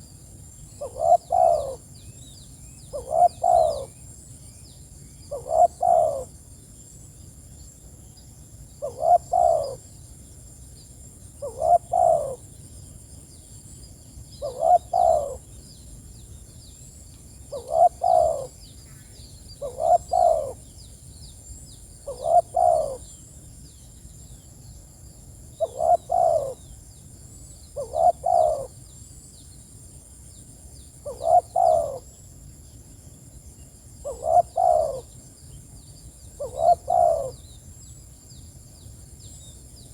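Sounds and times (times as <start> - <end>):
dove cooing: 0.8 - 1.8, 2.9 - 3.9, 5.3 - 6.3, 8.8 - 9.8, 11.4 - 12.4, 14.4 - 15.5, 17.5 - 18.6, 19.6 - 20.6, 22.0 - 23.1, 25.6 - 26.7, 27.7 - 28.8, 31.0 - 32.1, 34.0 - 35.1, 36.4 - 37.4.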